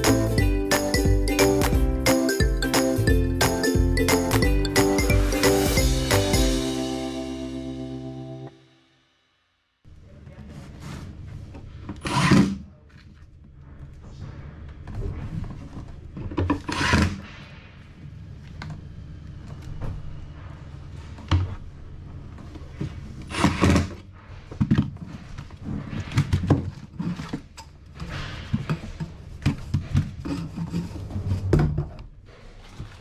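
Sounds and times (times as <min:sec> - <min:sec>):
scraping noises: 0:10.3 - 0:12.2, 0:27.9 - 0:31.5.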